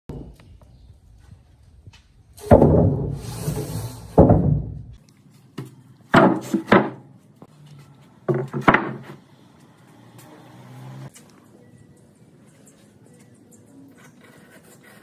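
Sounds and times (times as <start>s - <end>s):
wood scraping rub: 2.4s - 5.0s
heavy wooden pieces knocking: 4.1s - 5.0s.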